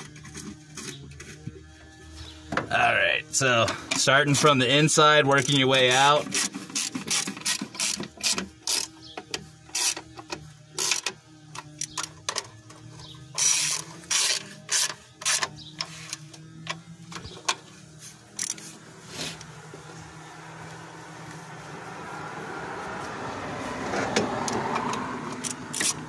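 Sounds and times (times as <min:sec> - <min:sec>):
hand ratchet clicking: 0:06.2 - 0:12.4, 0:13.3 - 0:17.5, 0:18.3 - 0:18.6, 0:24.4 - 0:26.0.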